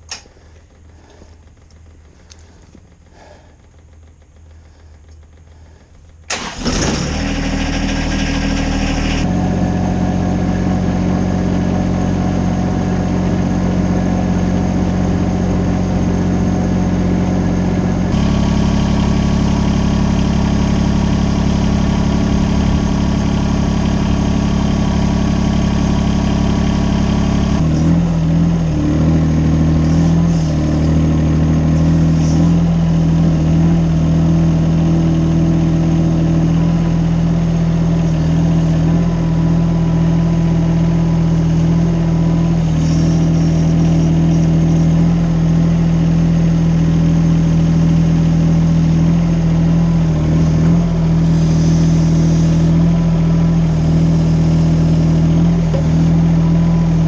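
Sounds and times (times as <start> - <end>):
engine running: 0.0 - 57.0
engine cranking and starting: 1.6 - 9.3.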